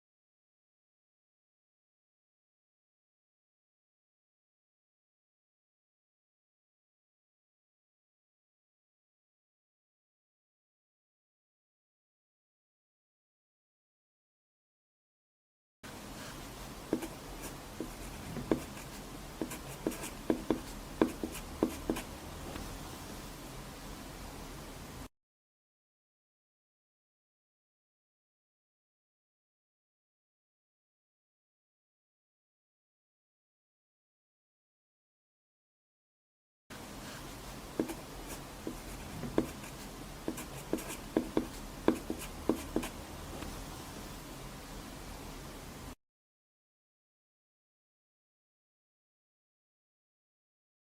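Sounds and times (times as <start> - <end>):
faint steady hiss: 15.9 - 25.1, 36.7 - 46.0
pencil writing on paper: 16.2 - 22.2, 37.1 - 43.0.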